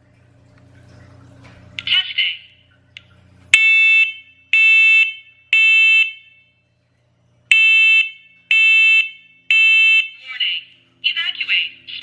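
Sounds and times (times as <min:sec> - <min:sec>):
smoke alarm beeping: 0:03.5 - 0:06.6, 0:07.5 - 0:10.2.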